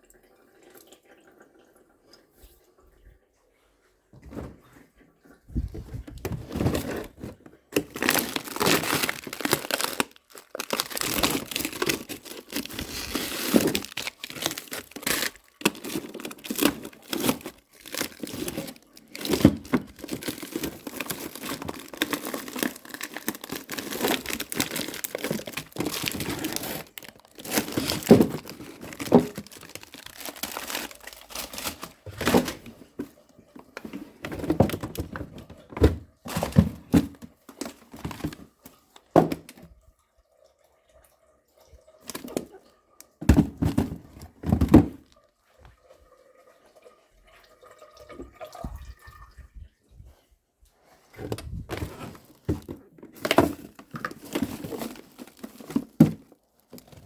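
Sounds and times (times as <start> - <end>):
plastic packaging crinkling and tearing: 5.7 - 32.8, 33.7 - 35.4, 36.3 - 38.5, 42.0 - 42.5, 51.2 - 57.0.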